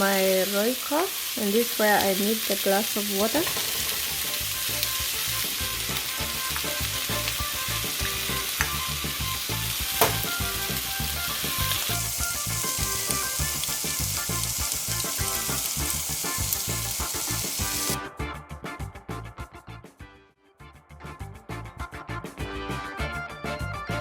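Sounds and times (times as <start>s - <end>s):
vegetables sizzling in oil: 0.0s - 18.0s.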